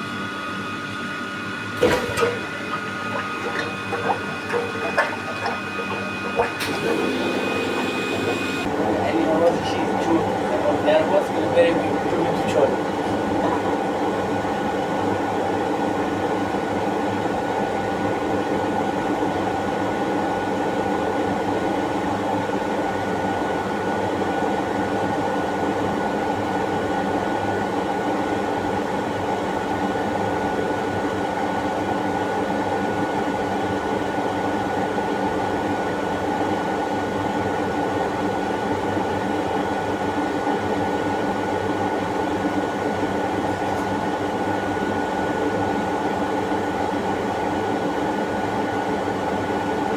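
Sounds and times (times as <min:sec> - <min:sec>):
mechanical hum and rumble: 0:00.0 - 0:20.5
thin high whine: 0:02.4 - 0:13.4.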